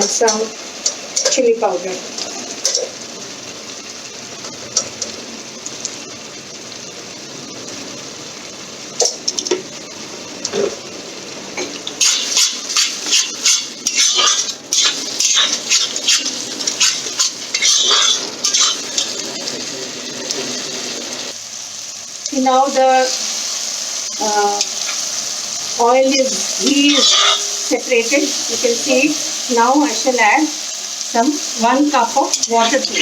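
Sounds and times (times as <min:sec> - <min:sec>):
masala sizzling in ghee: 0:00.0 - 0:33.0
spoon scraping a cooking pot: 0:12.0 - 0:19.1, 0:26.9 - 0:27.4.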